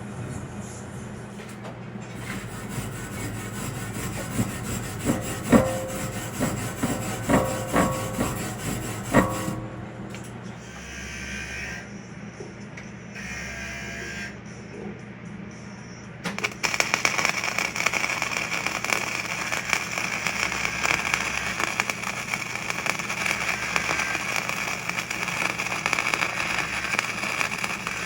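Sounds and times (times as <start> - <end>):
steady low hum: 0.0 - 13.2
arc welding crackle: 2.2 - 10.4, 16.3 - 28.0
ringing metal knocks: 5.0 - 10.6.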